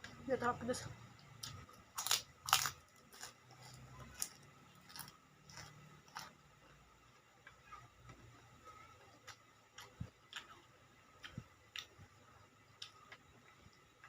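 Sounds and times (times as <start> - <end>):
chewing crunchy crackers: 1.4 - 6.4, 8.9 - 13.8.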